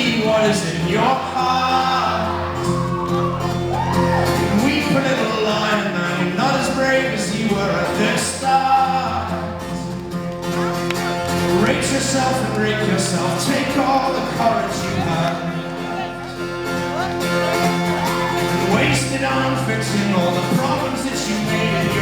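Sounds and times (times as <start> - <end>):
man singing: 0.0 - 10.0, 11.4 - 22.0
banjo: 0.0 - 22.0
strummed acoustic guitar: 0.0 - 22.0.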